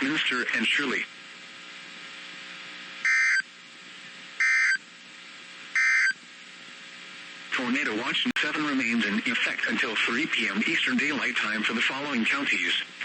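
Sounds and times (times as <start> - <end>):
radio hiss: 0.0 - 13.0
emergency alert data tone bursts: 3.0 - 3.4, 4.4 - 4.8, 5.8 - 6.2.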